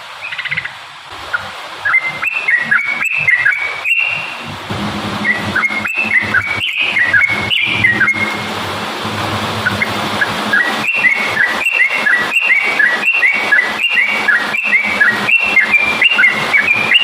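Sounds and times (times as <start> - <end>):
bird singing whistled notes: 1.8 - 4.5, 5.1 - 8.5, 9.6 - 17.0.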